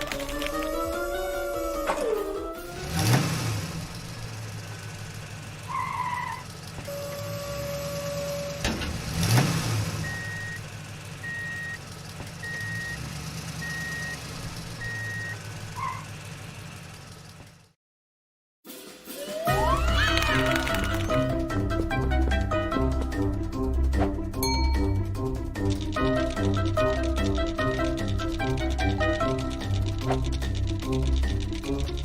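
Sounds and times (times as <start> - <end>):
vehicle engine running: 0.0 - 17.8, 19.7 - 32.0
engine revving: 1.4 - 17.6.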